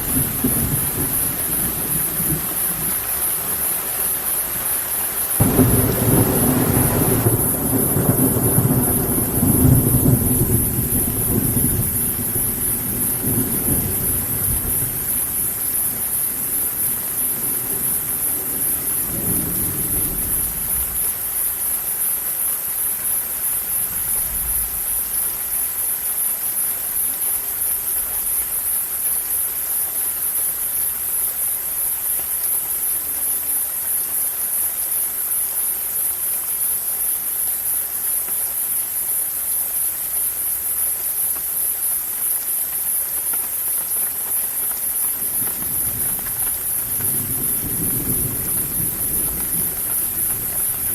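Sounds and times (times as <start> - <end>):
thunder rumbling: 0.0 - 3.8, 5.3 - 21.3, 44.2 - 50.9
steady rain: 0.0 - 50.9.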